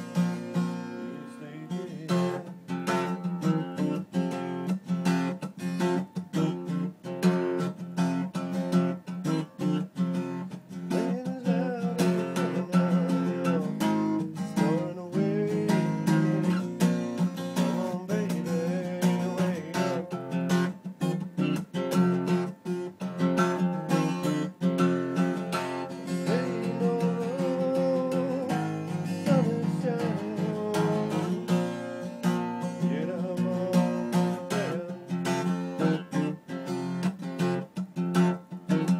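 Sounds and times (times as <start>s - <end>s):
person singing: 0.0s - 4.0s, 10.7s - 20.7s, 25.4s - 36.4s
acoustic guitar strumming: 0.0s - 38.9s.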